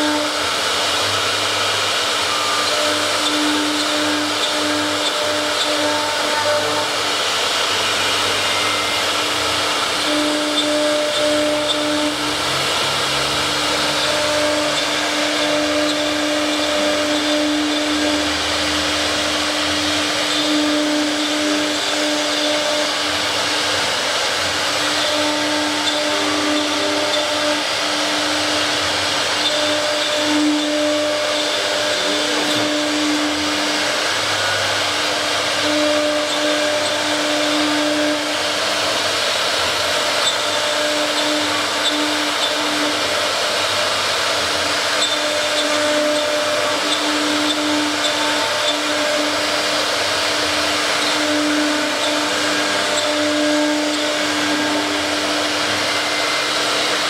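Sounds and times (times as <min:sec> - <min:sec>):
router machine humming: 0:00.0 - 0:57.0.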